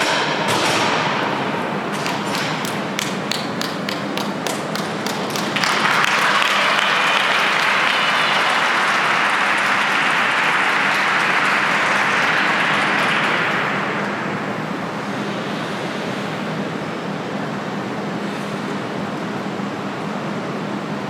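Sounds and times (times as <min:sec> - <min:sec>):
crowd applauding: 0:01.8 - 0:14.6.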